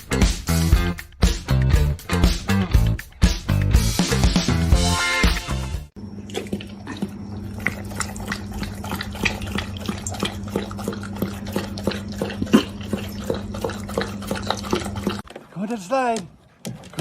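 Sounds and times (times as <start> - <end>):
dog lapping liquid: 6.0 - 15.6, 16.3 - 17.0.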